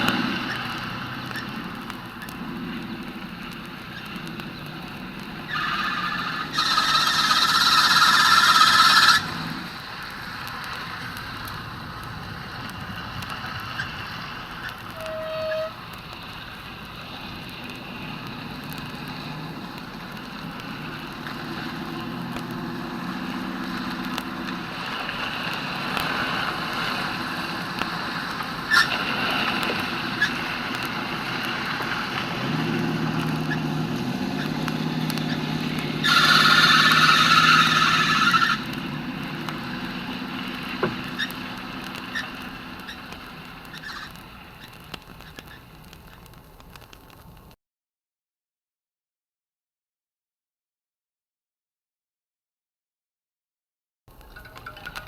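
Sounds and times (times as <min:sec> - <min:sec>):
vehicle engine running: 0:00.0 - 0:15.0, 0:15.8 - 0:44.5.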